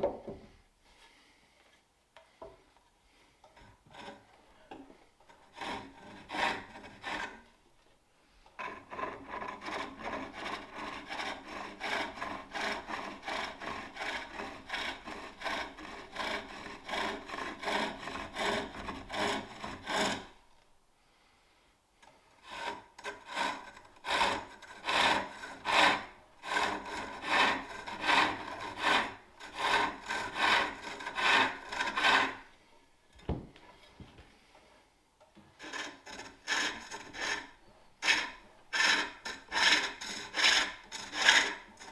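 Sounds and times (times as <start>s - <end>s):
rhythmic rasping wood cutting: 5.5s - 7.4s, 8.6s - 20.3s, 22.4s - 32.5s, 35.6s - 41.9s.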